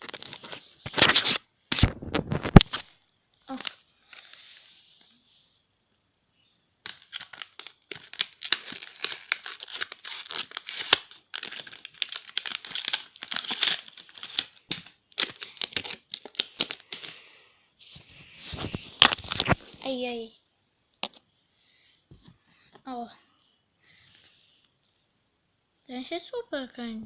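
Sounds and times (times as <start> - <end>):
plastic packaging crinkling and tearing: 0.0 - 2.9, 6.8 - 17.2, 18.5 - 19.8.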